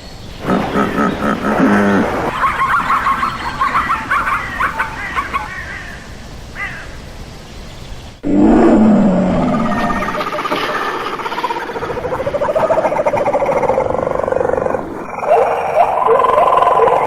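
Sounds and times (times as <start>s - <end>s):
low loud animal call: 8.2s - 17.0s.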